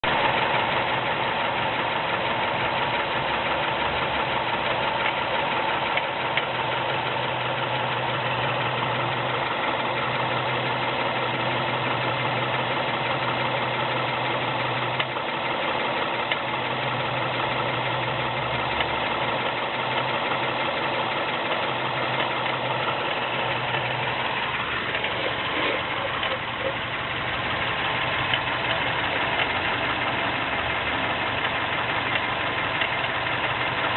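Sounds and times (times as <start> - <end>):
car engine idling: 0.0 - 33.9.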